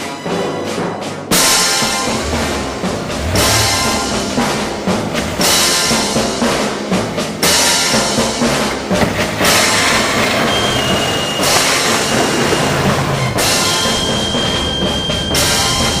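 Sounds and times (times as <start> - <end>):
cymbal crash: 2.0 - 6.5.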